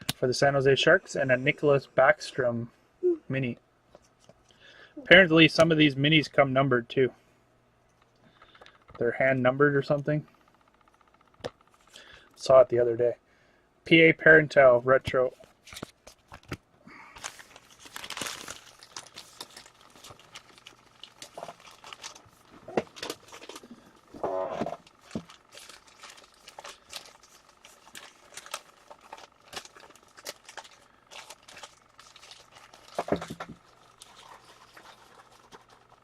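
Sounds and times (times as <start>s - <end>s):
trading cards handled: 15.4s - 16.6s, 17.2s - 36.0s
pack wrappers crinkling: 15.6s - 36.0s.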